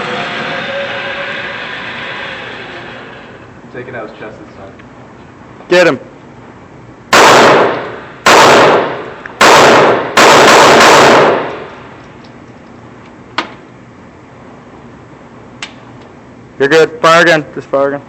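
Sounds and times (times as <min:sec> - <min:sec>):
pistol shots: 0:07.1 - 0:11.8.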